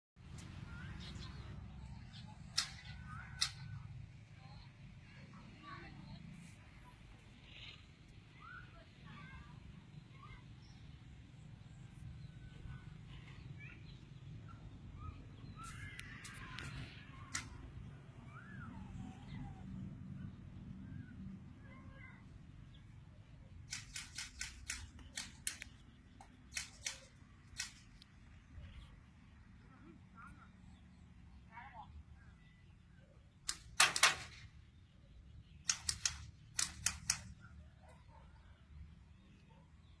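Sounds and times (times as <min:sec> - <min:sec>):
birds chirping and calling: 0:00.3 - 0:05.2, 0:07.3 - 0:09.4, 0:11.7 - 0:29.0, 0:32.3 - 0:38.6
sharp clicks: 0:02.1 - 0:03.8, 0:15.6 - 0:17.7, 0:23.6 - 0:28.2, 0:33.4 - 0:34.5, 0:35.6 - 0:37.6
sharp cracks: 0:02.5 - 0:03.8, 0:15.7 - 0:17.7, 0:23.6 - 0:28.1, 0:33.4 - 0:34.6, 0:35.6 - 0:37.4.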